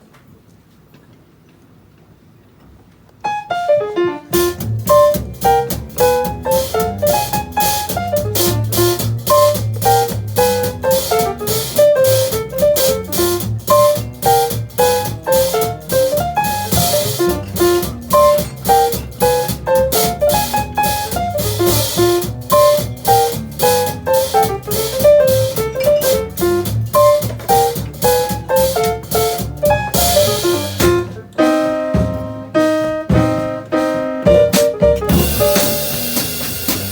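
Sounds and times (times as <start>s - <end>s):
piano melody: 3.2s - 36.9s
drum kit beat: 3.3s - 36.9s
low bass line: 4.4s - 31.2s.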